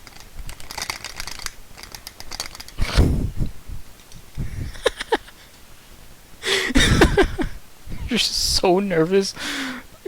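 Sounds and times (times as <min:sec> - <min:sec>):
loud breathy rush: 0:02.8 - 0:03.5, 0:09.4 - 0:10.0.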